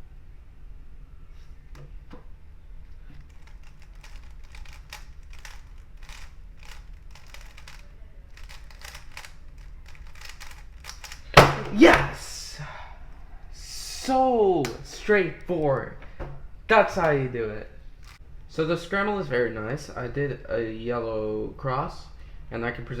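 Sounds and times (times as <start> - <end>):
puzzle cube plastic clicks: 3.2 - 11.4.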